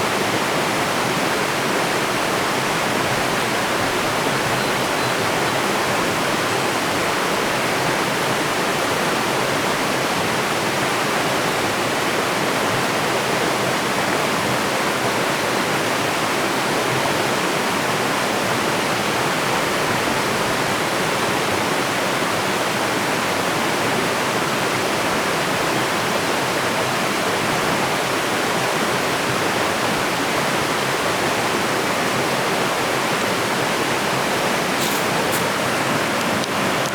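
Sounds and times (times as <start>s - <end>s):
waterfall rushing: 29.3s - 36.9s.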